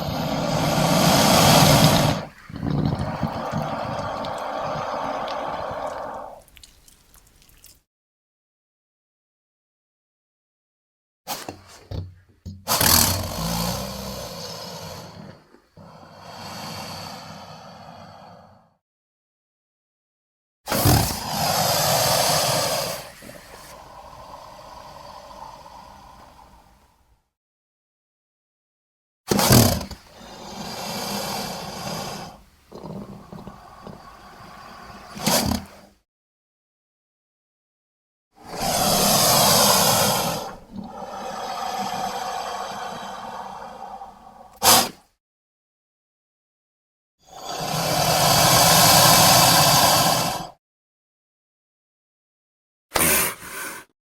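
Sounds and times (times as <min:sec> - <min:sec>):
crocodile low rough calls: 0:00.0 - 0:06.9, 0:29.4 - 0:35.9, 0:38.4 - 0:44.9.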